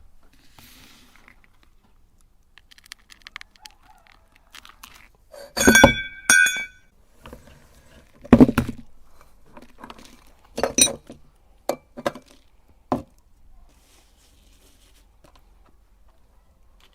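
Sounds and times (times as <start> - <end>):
hard objects clinking and knocking: 4.9 - 6.8, 9.8 - 12.4.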